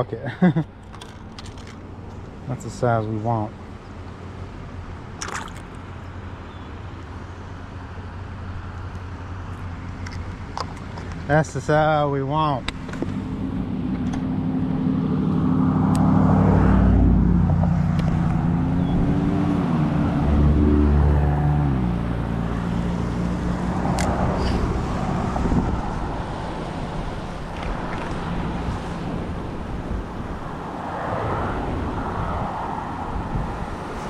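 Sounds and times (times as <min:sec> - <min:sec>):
steady rush of noise: 0:24.3 - 0:27.6, 0:32.8 - 0:34.0.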